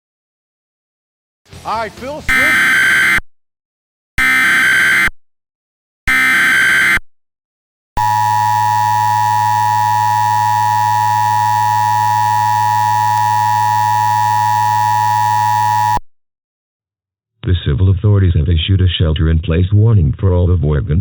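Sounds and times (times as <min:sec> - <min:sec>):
steady dual-tone attention signal: 0:02.3 - 0:03.2, 0:04.2 - 0:05.1, 0:06.1 - 0:07.0, 0:08.0 - 0:16.0.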